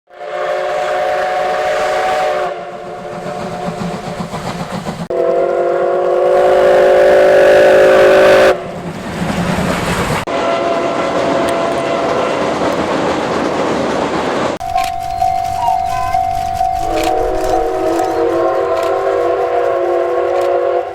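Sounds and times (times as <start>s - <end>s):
steam whistle blasts: 0.1s - 2.8s, 5.1s - 8.6s, 10.3s - 12.4s, 14.6s - 20.9s
steam locomotive chuffing: 0.1s - 20.9s.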